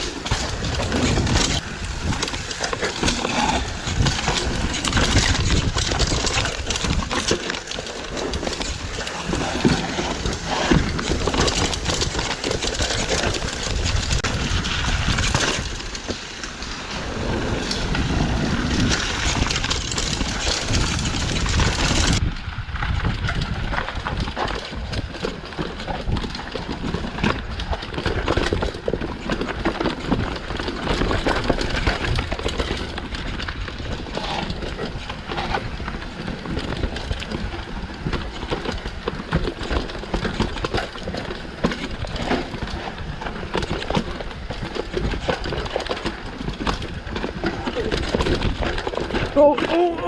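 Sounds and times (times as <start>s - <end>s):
bike rattling on rough trail: 0.0s - 50.0s.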